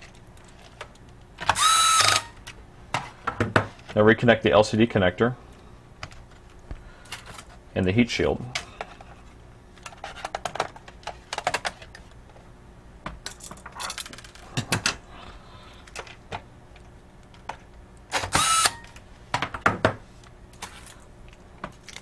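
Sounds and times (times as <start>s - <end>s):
laptop parts clicking and clattering: 9.8s - 12.1s.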